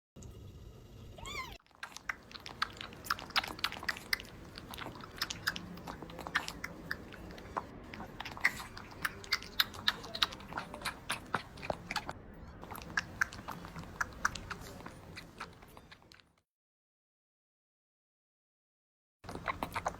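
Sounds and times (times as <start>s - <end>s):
kitten drinking milk: 1.2s - 16.4s, 19.2s - 19.9s.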